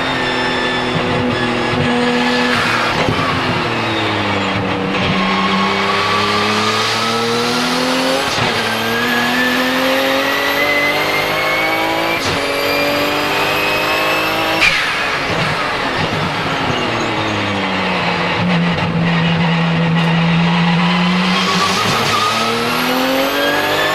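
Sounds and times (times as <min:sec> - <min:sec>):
car engine accelerating hard: 0:00.0 - 0:23.9
turbo whistle: 0:14.6 - 0:17.5.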